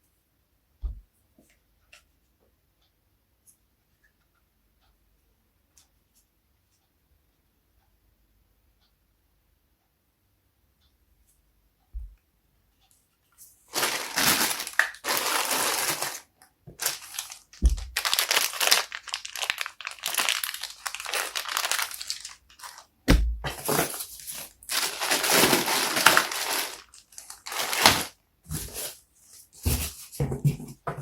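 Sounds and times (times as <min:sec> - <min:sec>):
crinkling and crunching handling: 0:13.4 - 0:30.8.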